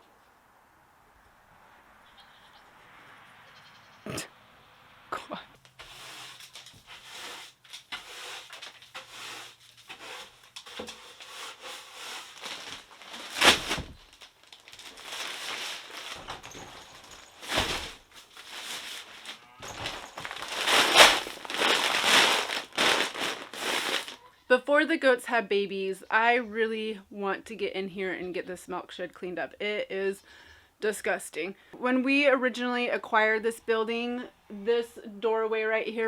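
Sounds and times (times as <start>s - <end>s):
rustling and crinkling: 5.6s - 24.3s
scraping bursts: 5.7s - 24.2s.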